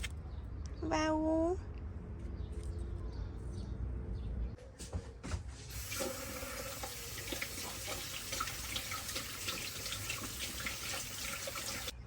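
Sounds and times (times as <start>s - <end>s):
water running from a tap: 5.7s - 12.0s.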